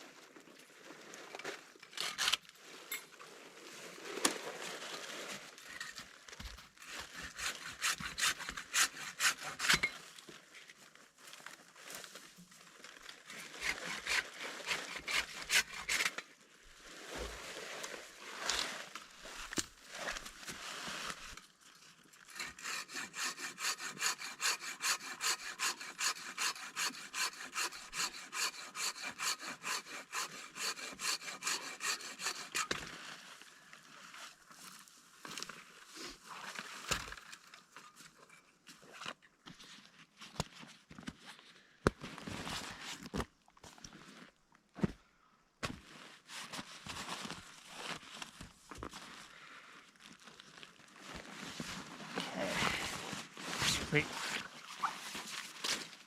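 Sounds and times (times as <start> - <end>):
rasping strokes: 6.9 - 10.0, 13.4 - 16.1, 22.3 - 32.8.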